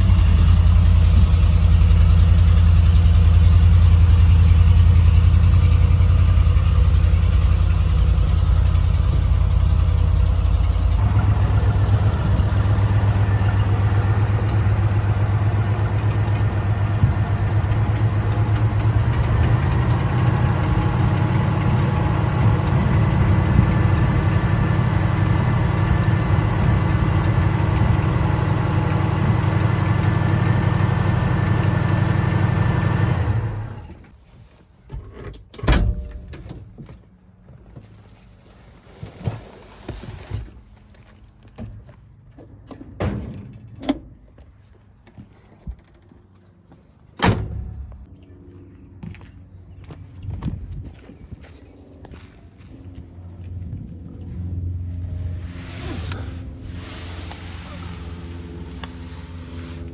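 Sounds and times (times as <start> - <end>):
car engine idling: 0.0 - 34.0, 52.2 - 59.9.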